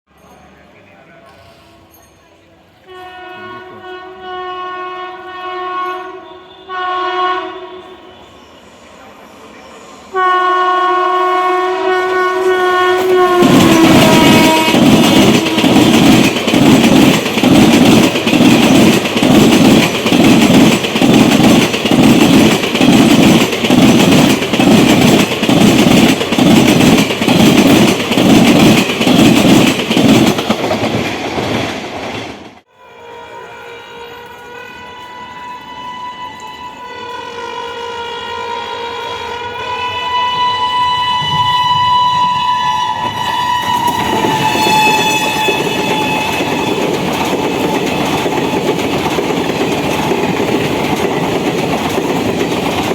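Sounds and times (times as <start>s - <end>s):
train horn: 2.8s - 8.8s, 10.1s - 16.3s, 32.7s - 47.1s
faint steady horn-like tone: 2.8s - 8.9s, 32.7s - 46.3s
train wheels clattering over rail joints: 13.0s - 32.6s, 43.0s - 52.9s.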